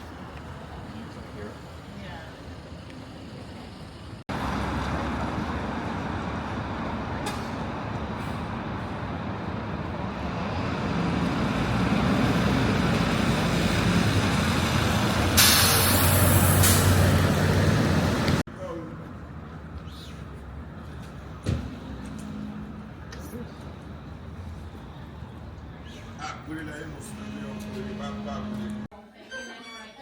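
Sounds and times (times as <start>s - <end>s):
air brake hiss: 15.4s - 17.0s
heavy diesel engine running: 20.8s - 25.8s, 26.4s - 28.9s.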